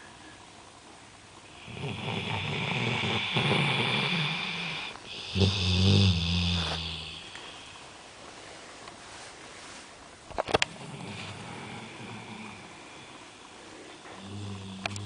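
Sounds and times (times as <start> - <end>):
dog snoring: 1.4 - 7.6, 10.7 - 13.2, 13.8 - 15.0.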